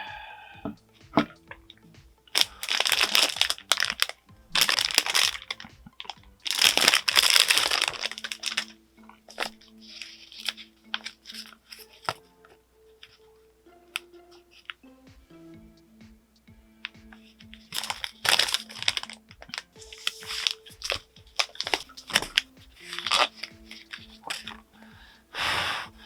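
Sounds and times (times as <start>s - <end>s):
plastic packaging crinkling: 2.3s - 8.7s, 9.3s - 12.2s, 17.6s - 24.6s.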